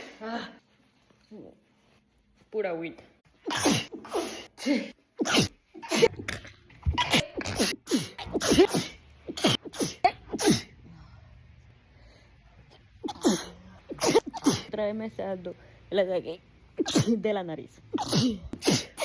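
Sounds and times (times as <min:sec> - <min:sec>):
woman sneezing: 0:03.4 - 0:06.2, 0:06.9 - 0:10.8, 0:13.0 - 0:14.8, 0:16.8 - 0:17.2, 0:17.9 - 0:19.0.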